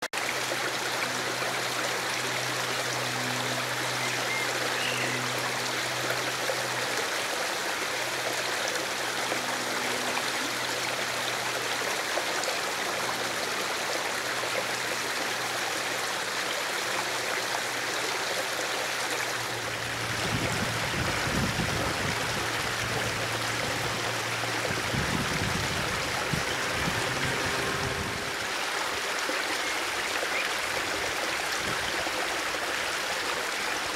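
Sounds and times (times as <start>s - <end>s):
wind buffeting microphone: 20.0s - 28.3s.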